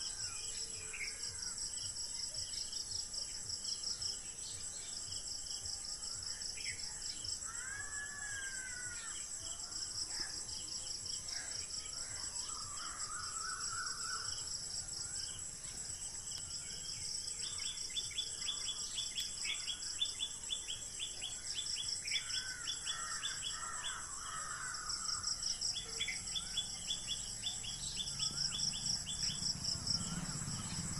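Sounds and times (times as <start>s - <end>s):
insects chirring: 0.0s - 30.9s
wild birds calling: 22.1s - 30.9s.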